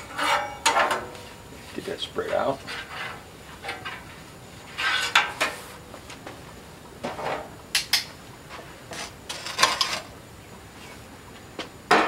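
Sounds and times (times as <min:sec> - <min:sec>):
metal utensils clinking and scraping: 0:00.0 - 0:01.1.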